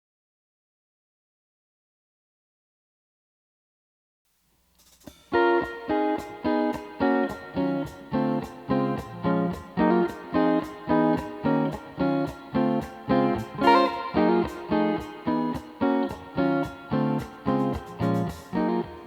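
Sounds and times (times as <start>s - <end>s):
plucked string instrument chords: 5.4s - 19.0s.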